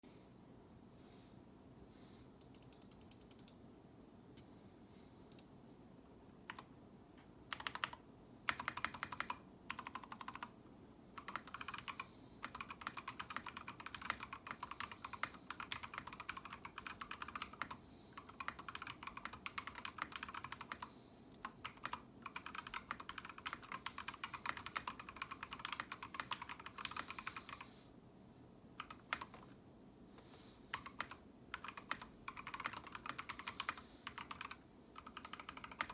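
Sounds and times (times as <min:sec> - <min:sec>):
typing on mechanical keyboard: 0:02.4 - 0:03.6, 0:06.5 - 0:06.7, 0:07.5 - 0:10.5, 0:11.2 - 0:27.7, 0:28.8 - 0:29.5, 0:30.8 - 0:35.9.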